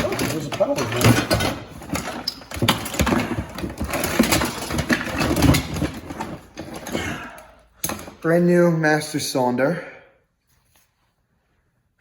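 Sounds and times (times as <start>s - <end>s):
car parts clattering: 0.0s - 8.5s.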